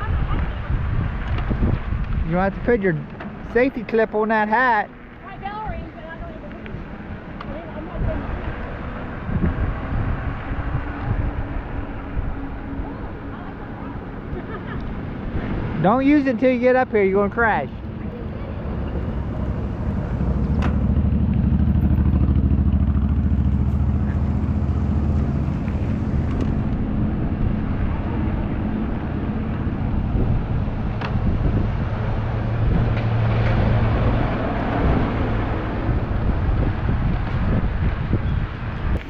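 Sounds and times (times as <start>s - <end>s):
outdoor noise: 0.0s - 39.0s
vehicle engine humming: 0.0s - 39.0s.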